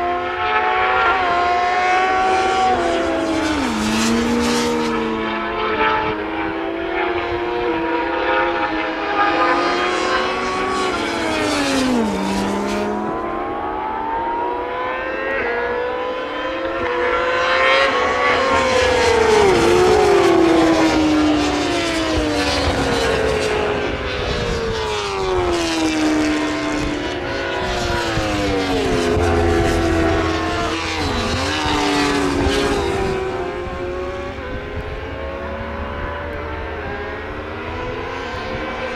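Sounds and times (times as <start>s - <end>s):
racing motorcycles passing: 0.0s - 38.9s.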